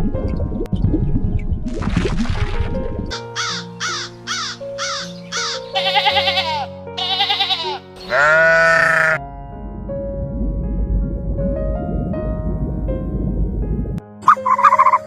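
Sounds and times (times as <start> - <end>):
background music: 0.0 - 15.0
quavering bleat-like calls: 4.9 - 9.2
high falling chirps: 14.2 - 15.0.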